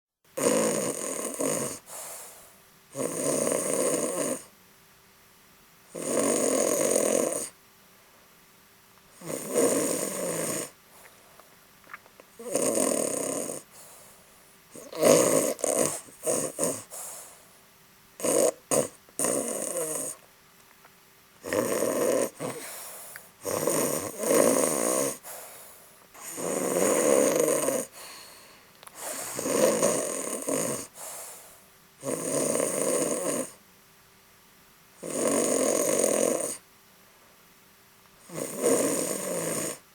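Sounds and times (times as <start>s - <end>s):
cat snoring: 0.4s - 4.5s, 5.9s - 7.6s, 9.1s - 10.8s, 12.4s - 17.4s, 18.2s - 20.2s, 21.4s - 33.6s, 35.0s - 36.6s, 38.2s - 39.9s.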